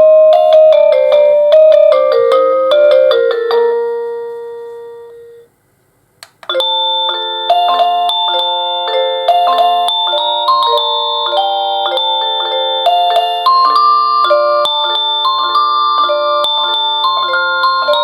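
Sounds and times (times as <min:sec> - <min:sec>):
doorbell electronic chime: 0:06.5 - 0:18.0.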